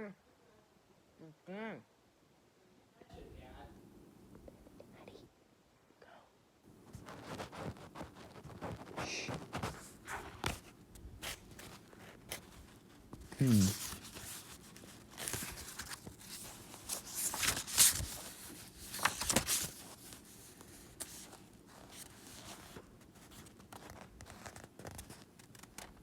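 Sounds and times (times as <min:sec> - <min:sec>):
paper rustling and crinkling: 0:06.8 - 0:26.0.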